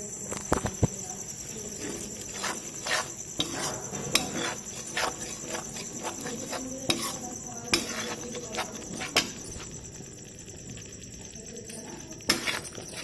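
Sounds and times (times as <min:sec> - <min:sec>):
high-pitched whine: 0:00.0 - 0:13.0
utensil scraping a pan: 0:01.4 - 0:09.8, 0:12.2 - 0:13.0.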